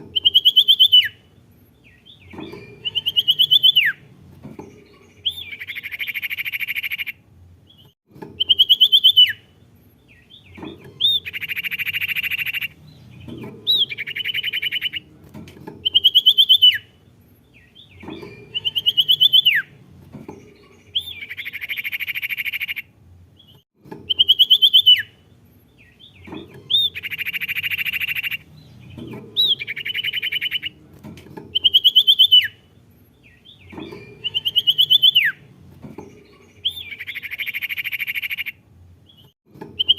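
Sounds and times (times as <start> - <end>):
songbird whistled phrases: 31.6 - 32.6, 34.2 - 35.4.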